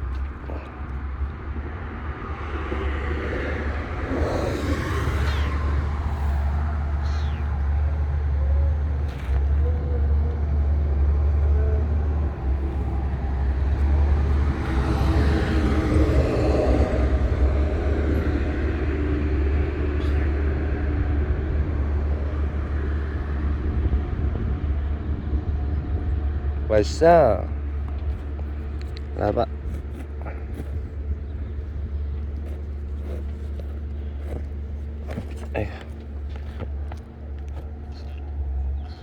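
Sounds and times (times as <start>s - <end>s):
steady low rumble: 0.0s - 39.0s
cat meowing: 4.0s - 8.8s.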